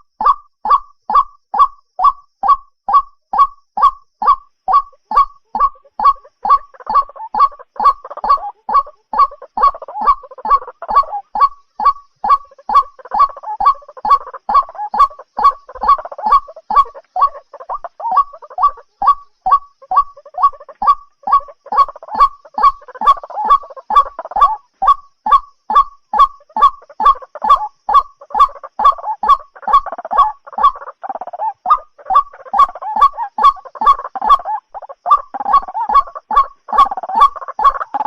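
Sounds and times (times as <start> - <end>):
waterhen calling: 0.0 - 38.0
rough chattering call: 5.1 - 38.0.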